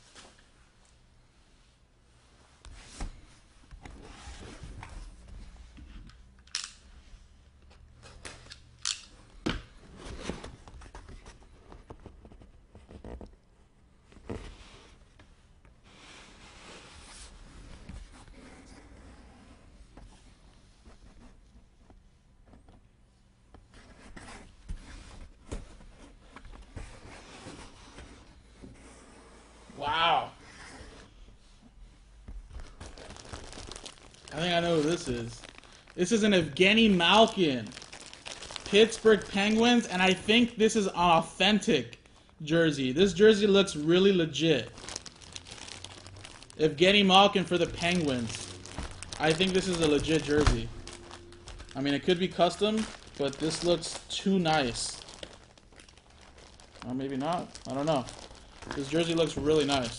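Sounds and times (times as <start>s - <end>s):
sharp clicks and snaps: 8.5s - 9.1s
packaging rustling and scraping: 32.6s - 40.4s, 44.4s - 59.9s.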